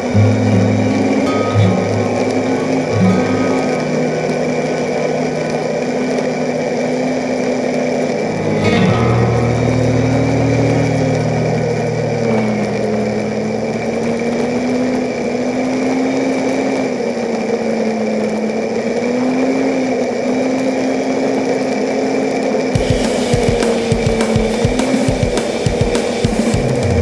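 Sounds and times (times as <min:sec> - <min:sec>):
atv engine running: 0:22.8 - 0:27.0.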